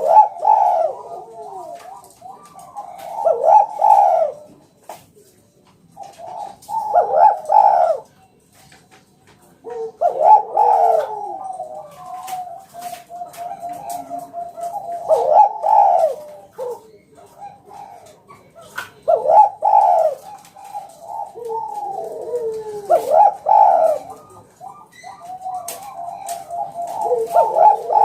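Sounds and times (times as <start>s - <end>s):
dove cooing: 0.0s - 5.0s, 5.8s - 8.7s, 9.4s - 28.0s.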